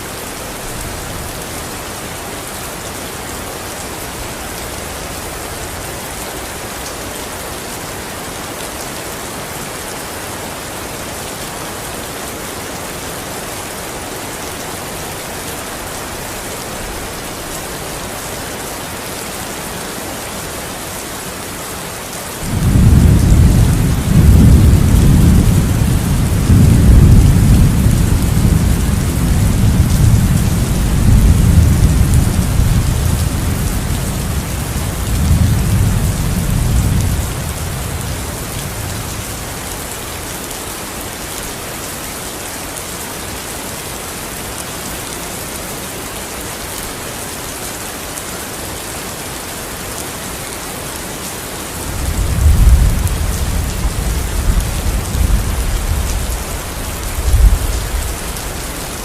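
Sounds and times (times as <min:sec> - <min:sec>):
heavy rain hissing: 0:00.0 - 0:59.0
rolling thunder: 0:22.4 - 0:39.5, 0:51.9 - 0:58.6.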